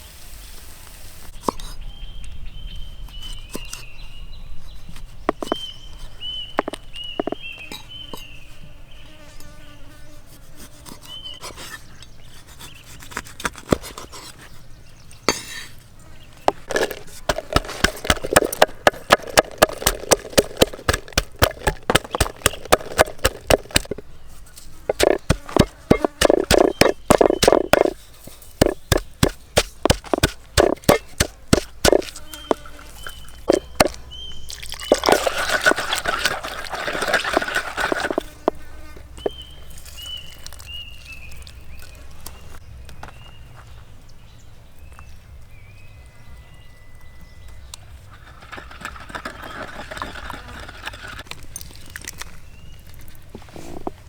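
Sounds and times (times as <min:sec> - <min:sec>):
knife chopping on cutting board: 0:28.6 - 0:32.6.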